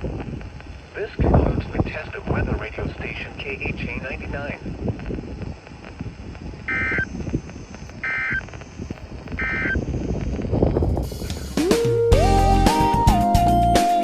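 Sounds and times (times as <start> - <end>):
radio static and hiss: 0.0 - 11.2
buzzy digital chirps: 6.6 - 10.3.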